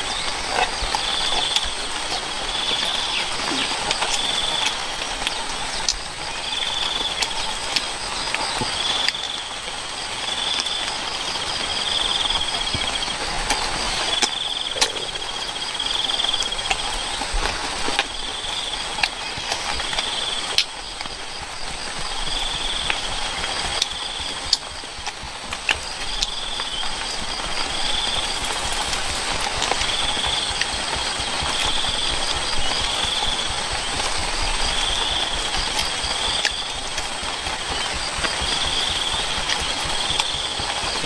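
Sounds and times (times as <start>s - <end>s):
insects pulsed trills: 0.0s - 41.0s
high-pitched insect drone: 10.2s - 24.6s.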